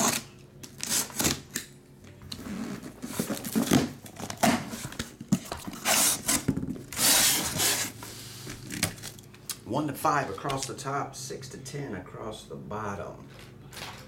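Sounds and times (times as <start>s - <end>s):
cardboard rustling and scraping: 2.3s - 9.2s.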